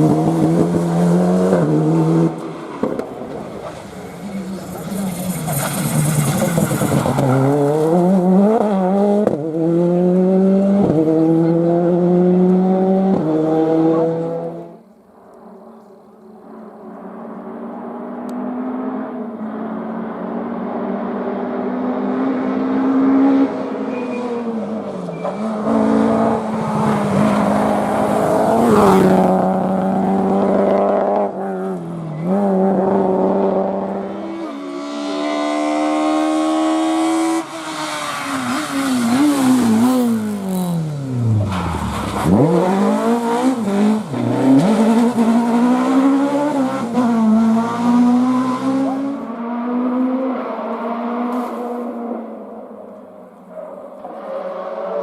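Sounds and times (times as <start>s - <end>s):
rally car engine revving: 0.0s - 14.8s, 17.0s - 53.1s.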